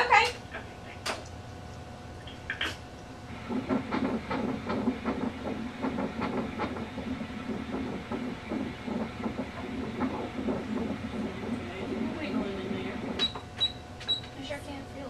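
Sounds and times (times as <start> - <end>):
fetal heartbeat whooshing pulse: 3.3 - 14.3.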